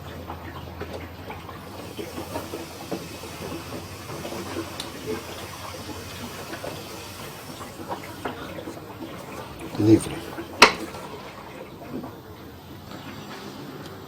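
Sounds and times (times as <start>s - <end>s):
washing machine spinning: 0.0s - 14.0s.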